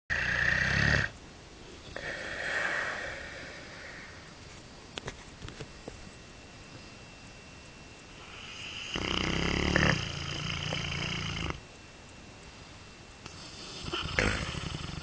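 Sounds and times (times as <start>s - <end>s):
dog snoring: 0.1s - 1.2s, 1.8s - 4.2s, 8.2s - 11.6s, 13.2s - 15.0s.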